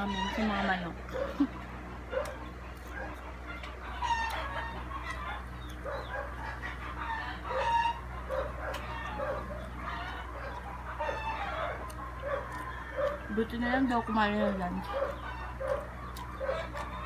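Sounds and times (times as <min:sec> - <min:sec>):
chickens clucking: 0:00.0 - 0:17.0
roosters crowing: 0:00.0 - 0:17.0
steady low hum: 0:00.0 - 0:17.0.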